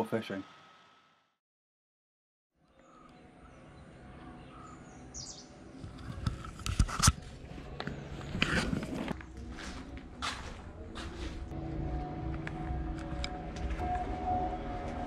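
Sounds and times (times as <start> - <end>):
birds chirping: 2.6 - 5.7.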